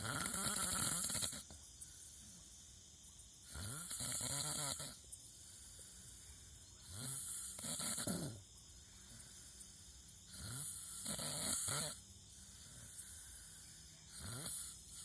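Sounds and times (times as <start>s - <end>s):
person snoring: 0.0s - 1.5s, 3.5s - 5.0s, 6.9s - 8.4s, 10.3s - 12.0s, 14.1s - 15.0s.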